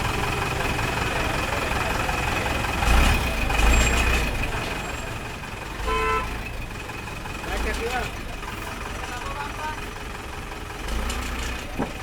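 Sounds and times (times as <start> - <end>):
heavy vehicle rumbling past: 0.0 - 12.0
vehicle engines: 0.0 - 12.0.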